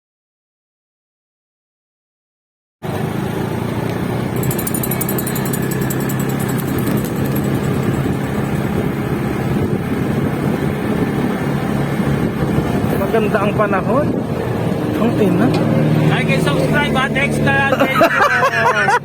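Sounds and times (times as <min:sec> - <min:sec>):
vehicle engine running: 0:02.8 - 0:17.7.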